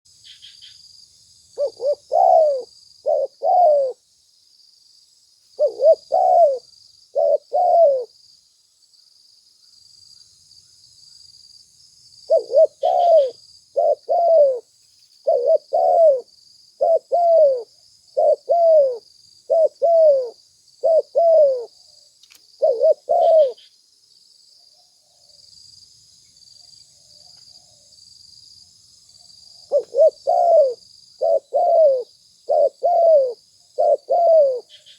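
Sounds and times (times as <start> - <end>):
dove cooing: 1.6 - 4.0, 5.6 - 8.2, 12.3 - 21.8, 22.6 - 23.6, 29.7 - 34.8.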